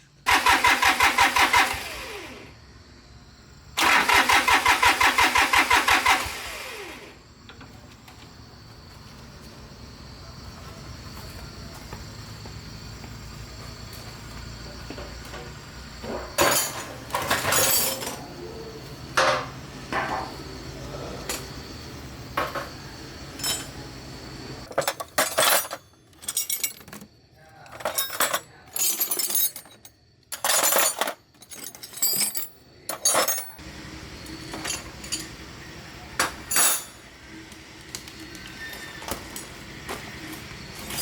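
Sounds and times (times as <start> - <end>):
metal tools clinking and scraping: 16.0 - 18.4, 23.3 - 23.9, 24.6 - 33.6, 34.2 - 35.5, 36.2 - 37.1, 38.3 - 41.0.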